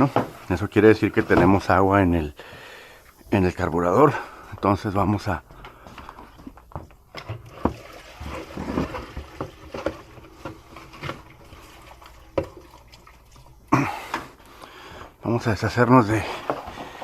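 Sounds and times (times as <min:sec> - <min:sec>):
liquid dribbling into container: 0:07.4 - 0:13.9.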